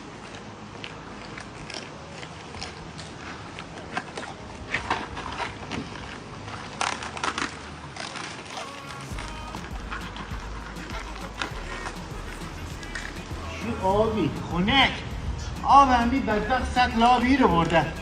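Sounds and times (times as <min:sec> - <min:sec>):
dog crunching food: 0:00.0 - 0:13.4.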